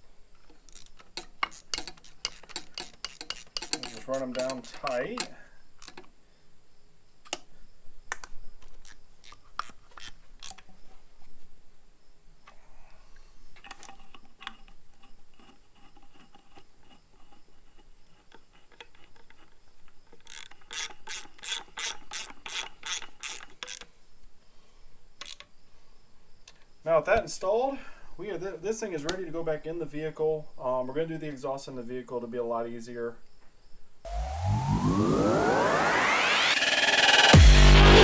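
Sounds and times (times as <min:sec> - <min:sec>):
ratchet wrench clicking: 0:00.7 - 0:06.1, 0:20.2 - 0:23.9, 0:25.2 - 0:25.4.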